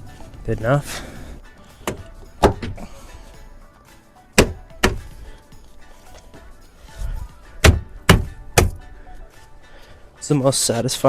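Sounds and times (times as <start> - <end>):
hand thumping door panel: 1.8 - 2.8, 4.4 - 5.1, 7.6 - 8.8.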